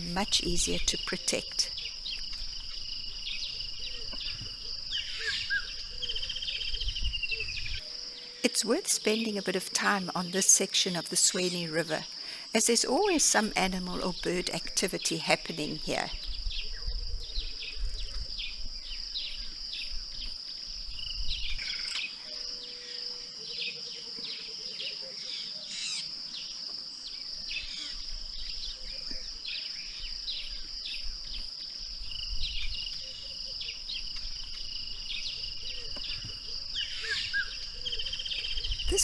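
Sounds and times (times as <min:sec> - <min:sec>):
bird chirps: 0:00.0 - 0:08.5
insect drone: 0:00.0 - 0:39.0.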